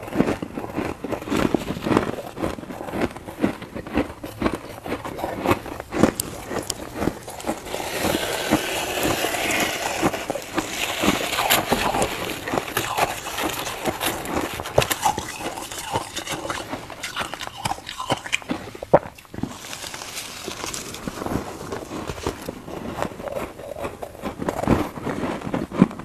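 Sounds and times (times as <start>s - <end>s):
frost crunching being chewed: 0.0s - 26.0s.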